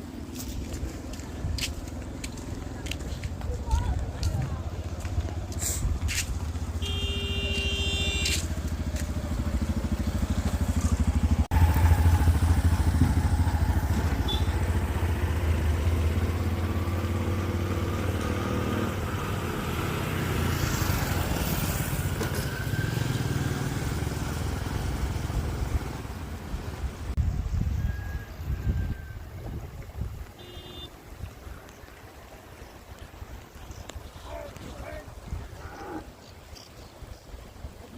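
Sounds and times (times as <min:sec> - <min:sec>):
vehicle engine rumbling: 0:00.0 - 0:37.9.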